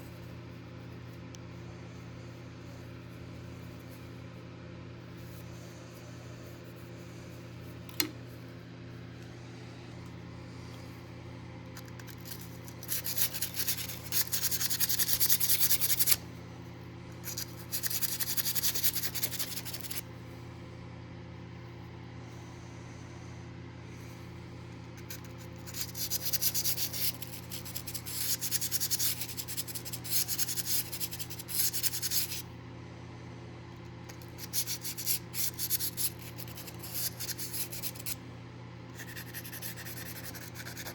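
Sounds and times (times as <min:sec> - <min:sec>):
low electrical hum: 0:00.0 - 0:40.9
sanding strokes on a knife: 0:12.2 - 0:16.2, 0:25.2 - 0:32.4, 0:34.4 - 0:38.2, 0:39.0 - 0:40.9.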